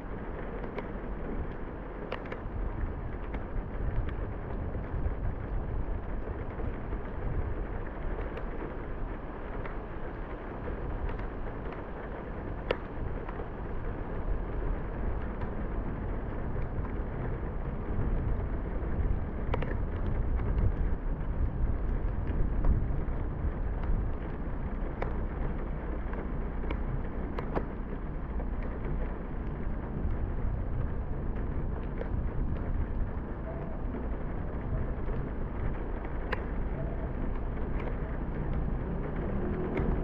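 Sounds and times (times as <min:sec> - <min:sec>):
car tyres on wet road: 0:00.0 - 0:40.0
raindrops ticking: 0:00.0 - 0:40.0.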